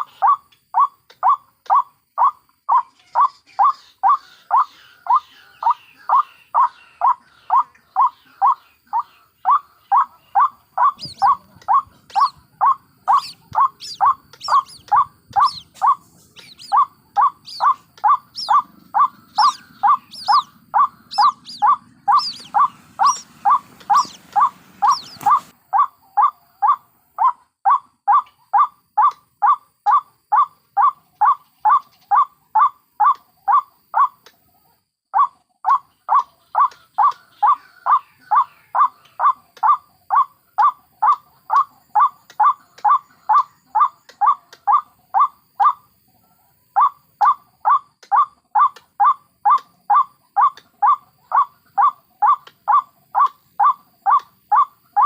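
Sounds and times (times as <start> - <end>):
waterhen short calls: 0.0 - 34.1
chicks high-pitched calls: 0.0 - 34.4, 35.2 - 55.0.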